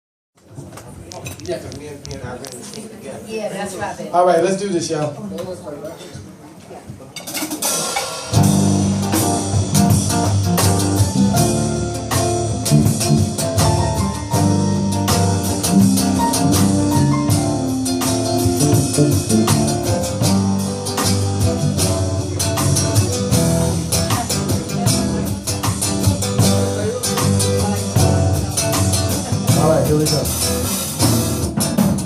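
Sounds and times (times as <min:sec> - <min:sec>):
drum kit: 0:07.2 - 0:32.0
piano: 0:08.2 - 0:32.0
bass: 0:08.3 - 0:32.0.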